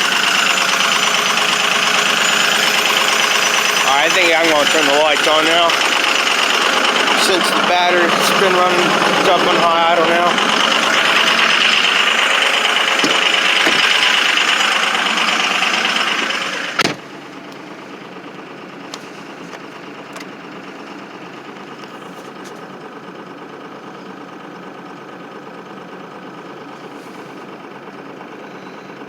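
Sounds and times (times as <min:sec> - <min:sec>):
diesel engine misfiring on idle: 0:00.0 - 0:29.0
car door shutting: 0:12.9 - 0:14.0.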